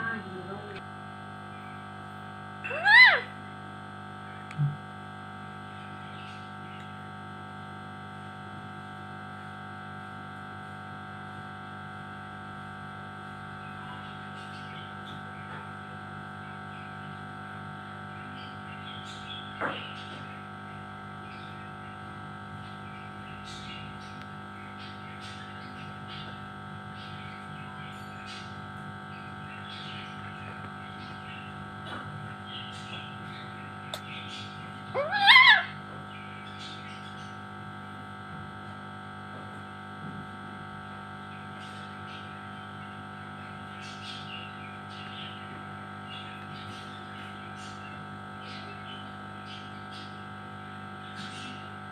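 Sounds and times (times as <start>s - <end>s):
electrical hum: 0.0s - 51.9s
parrot squawk: 2.6s - 3.4s, 34.9s - 35.8s.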